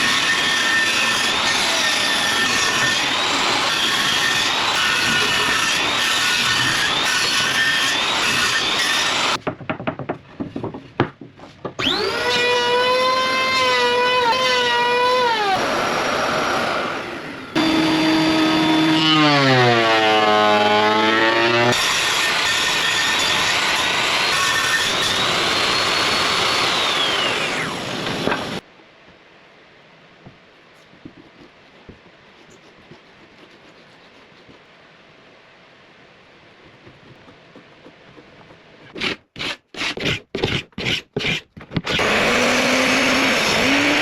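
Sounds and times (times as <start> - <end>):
power tool cutting wood: 0.0 - 9.4, 11.8 - 28.6, 41.9 - 44.0
wood knocks and clicks: 9.4 - 11.8
power tool motor whine: 11.8 - 21.9, 25.0 - 28.6, 41.9 - 44.0.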